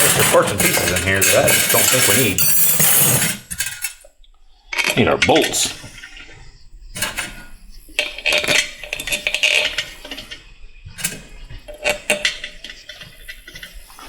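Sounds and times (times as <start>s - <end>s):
steel bolts clinking: 0.0s - 4.0s.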